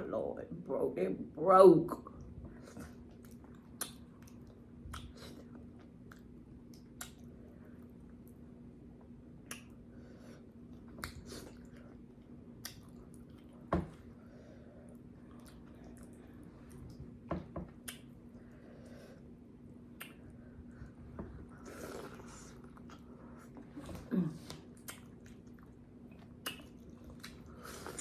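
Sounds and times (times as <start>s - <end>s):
faint steady hum: 0.0s - 28.0s
mouth eating sounds: 24.0s - 28.0s.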